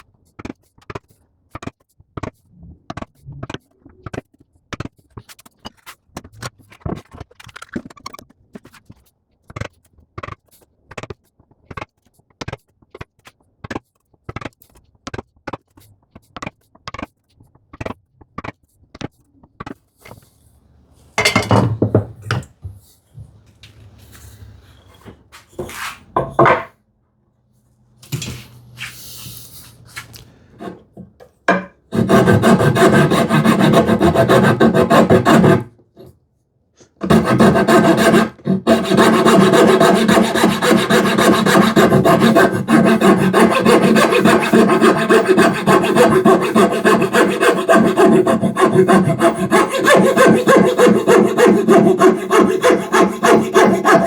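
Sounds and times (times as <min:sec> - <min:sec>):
hand saw cutting wood: 0:31.9 - 0:36.1, 0:37.0 - 0:54.0.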